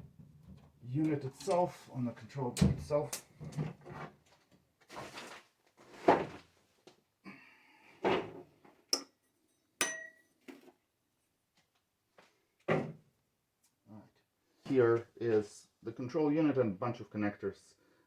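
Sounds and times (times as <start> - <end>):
handling knocks and clunks: 12.7 - 13.0.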